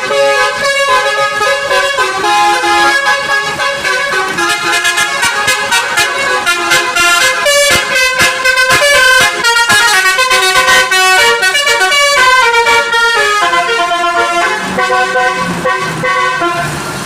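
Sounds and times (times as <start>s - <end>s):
vehicle musical horn melody: 0.0s - 16.8s.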